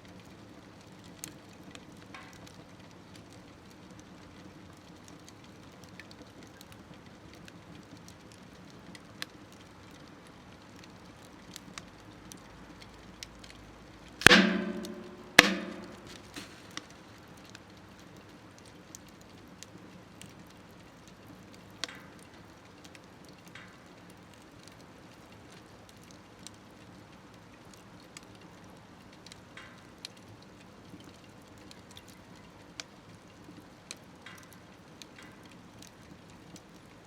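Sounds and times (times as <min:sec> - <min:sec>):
wood fire crackling in stove: 0:00.1 - 0:17.0, 0:18.3 - 0:37.0
loud ringing knocks: 0:14.2 - 0:16.3.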